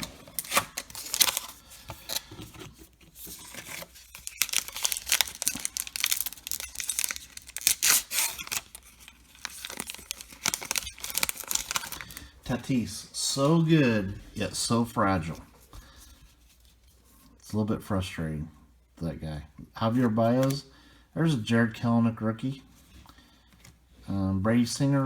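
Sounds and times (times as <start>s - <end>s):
wrapper tearing and crinkling: 0.0s - 2.3s, 3.2s - 12.3s.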